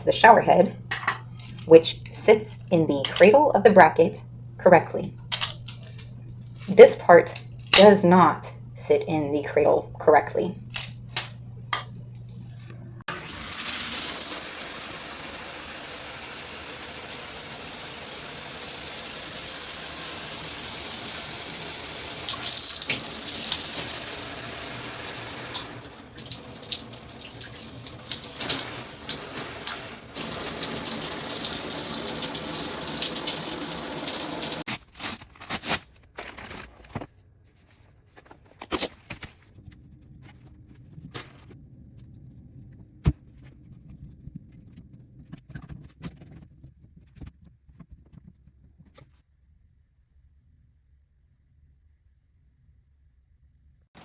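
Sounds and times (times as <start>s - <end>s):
water spraying from shower head: 13.1s - 34.7s.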